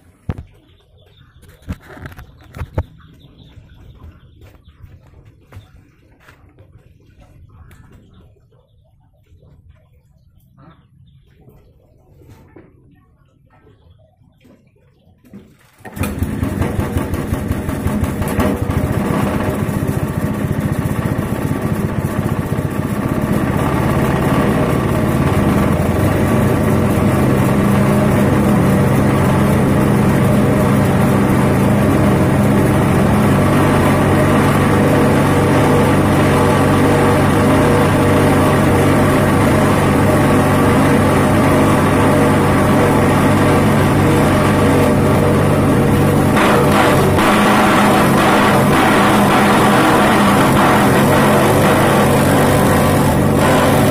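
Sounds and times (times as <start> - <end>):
grass chopper engine running: 15.8 - 53.9.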